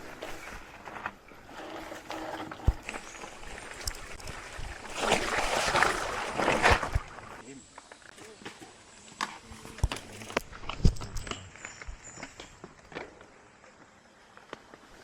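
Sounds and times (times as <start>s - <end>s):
bike tyres rushing on dirt: 0.0s - 7.4s.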